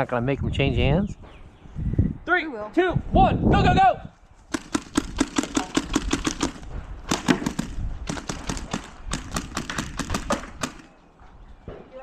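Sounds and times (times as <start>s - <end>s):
rapid gunshots: 4.5s - 10.9s.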